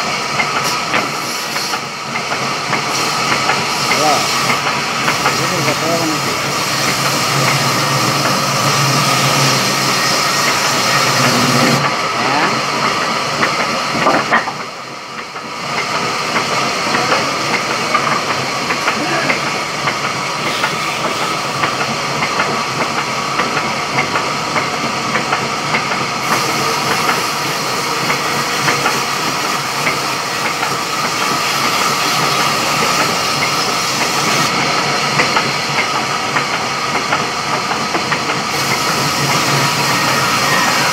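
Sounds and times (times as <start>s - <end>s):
sawmill saw cutting timber: 0.6s - 1.9s, 2.8s - 12.9s, 17.0s - 22.5s, 26.2s - 36.0s, 38.4s - 40.9s.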